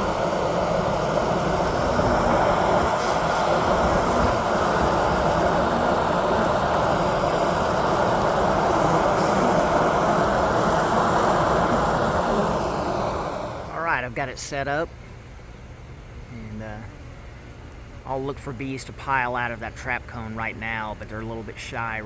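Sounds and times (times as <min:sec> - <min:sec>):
honey bees buzzing: 0:00.0 - 0:14.0.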